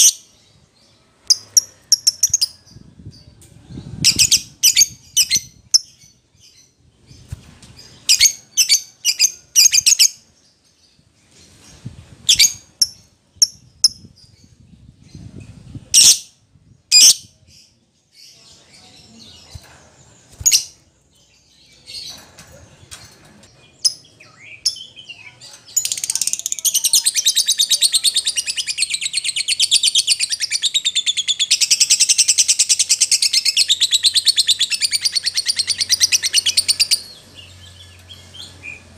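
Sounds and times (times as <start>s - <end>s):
lovebird chirping: 0.0s - 10.4s, 11.3s - 14.6s, 15.2s - 19.7s, 23.7s - 38.9s
lovebird rapid chattering song: 1.2s - 2.7s, 4.0s - 6.6s, 12.2s - 14.4s, 23.8s - 38.9s.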